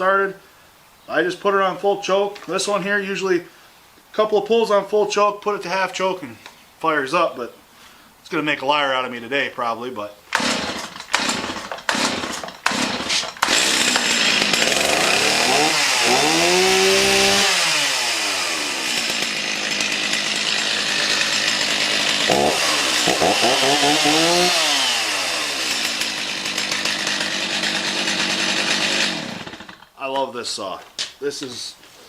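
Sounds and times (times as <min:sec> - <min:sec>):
chainsaw running and revving: 0:10.3 - 0:29.9
chainsaw starter cord pulls: 0:10.3 - 0:29.9.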